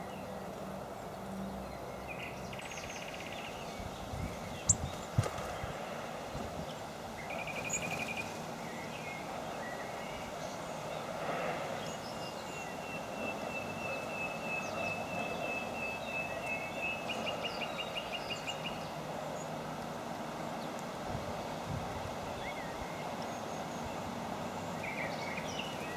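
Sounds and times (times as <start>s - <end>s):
outdoor background rush: 0.0s - 25.9s
songbirds calling: 0.0s - 25.9s.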